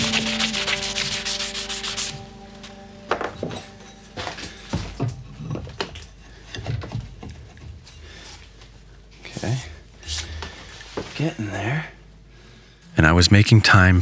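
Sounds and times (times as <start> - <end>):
rubbing scraping like sanding: 0.0 - 2.3
background music: 0.0 - 6.0.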